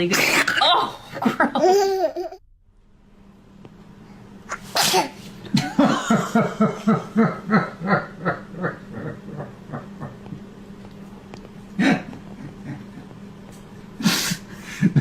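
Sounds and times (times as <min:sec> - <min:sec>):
baby laughing rhythmically: 0:01.2 - 0:02.4
baby sneezing: 0:04.5 - 0:05.2.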